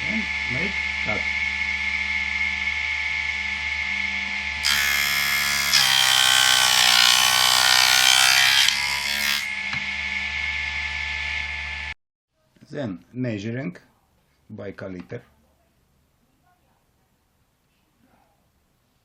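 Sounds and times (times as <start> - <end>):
table saw running: 0.0 - 11.9
saw blade cutting wood: 4.6 - 10.0.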